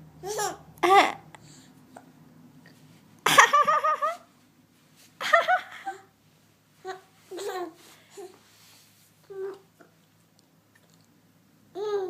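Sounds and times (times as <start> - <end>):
baby giggling: 5.2 - 6.1, 6.9 - 8.3
soft baby sounds: 6.8 - 8.5, 9.2 - 10.0, 11.7 - 12.0.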